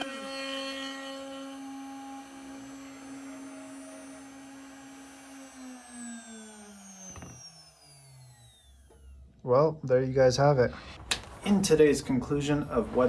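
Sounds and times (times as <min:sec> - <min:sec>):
router spindle whining: 0:00.0 - 0:09.4.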